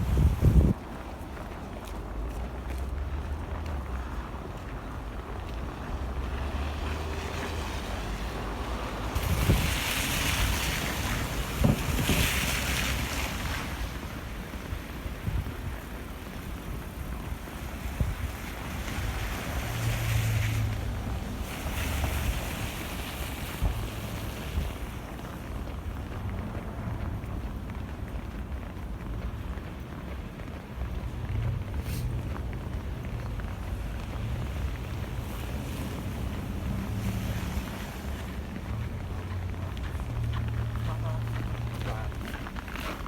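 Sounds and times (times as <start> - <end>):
wind buffeting microphone: 0.0 - 1.3, 8.4 - 19.9.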